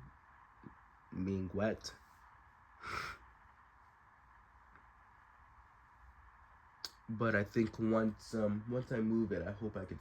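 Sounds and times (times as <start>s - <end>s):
breath-like puff of noise: 2.8s - 3.3s.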